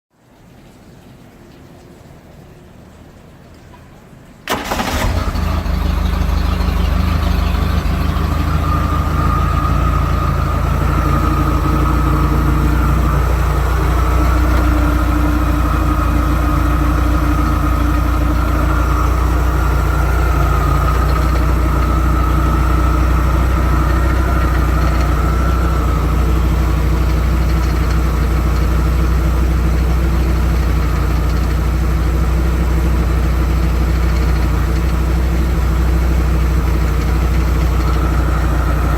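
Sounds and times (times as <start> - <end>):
boat engine idling: 4.4 - 38.9.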